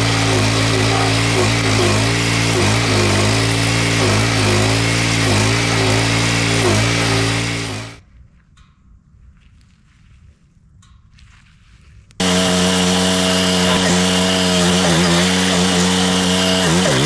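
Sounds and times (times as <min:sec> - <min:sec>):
stump grinder engine running: 0:00.0 - 0:08.0, 0:12.2 - 0:17.0.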